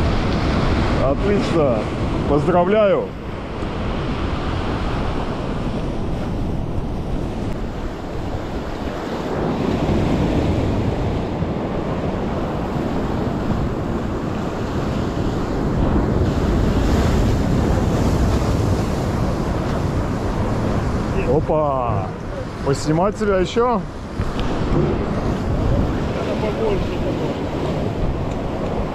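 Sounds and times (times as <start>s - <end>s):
sea surf washing in: 0.0s - 28.9s
wind buffeting microphone: 0.0s - 28.9s.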